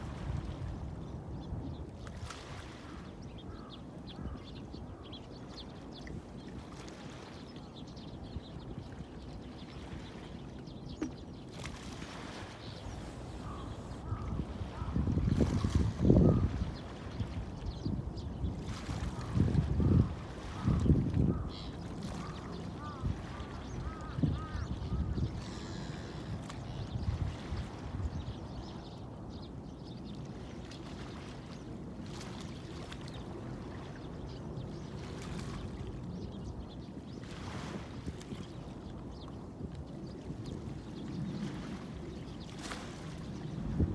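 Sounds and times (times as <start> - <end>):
moving water: 1.8 - 43.9
faint bird calls: 12.3 - 16.6, 19.2 - 27.1.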